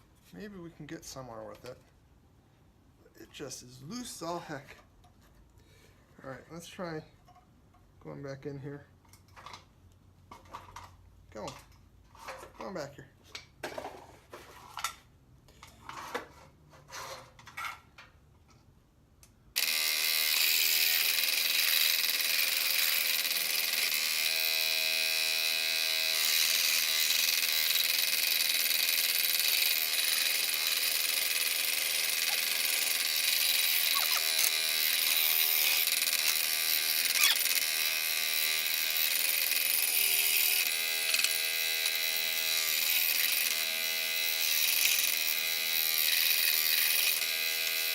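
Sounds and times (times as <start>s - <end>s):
electric saw cutting wood: 19.6s - 47.9s.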